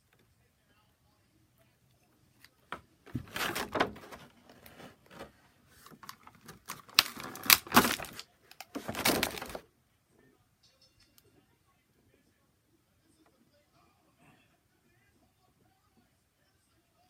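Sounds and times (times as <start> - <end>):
packaging crinkling and tearing: 3.2 - 9.6.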